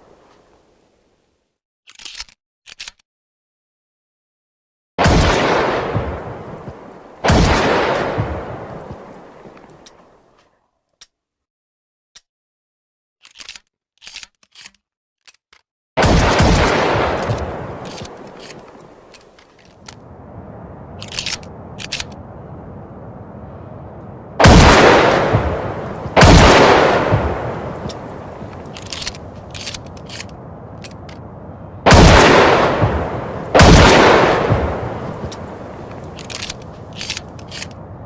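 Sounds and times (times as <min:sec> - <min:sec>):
shotgun shots echoing: 0:05.0 - 0:06.6, 0:07.2 - 0:08.8, 0:16.0 - 0:19.0, 0:24.4 - 0:29.8, 0:31.9 - 0:36.7
shotgun clicks: 0:16.2 - 0:20.0, 0:24.4 - 0:31.2, 0:33.6 - 0:37.8.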